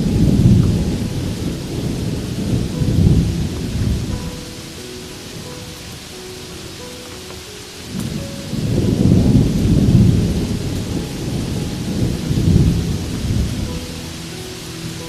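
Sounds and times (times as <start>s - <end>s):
rolling thunder: 0.0s - 7.0s, 7.8s - 15.0s
steady rain hiss: 0.0s - 15.0s.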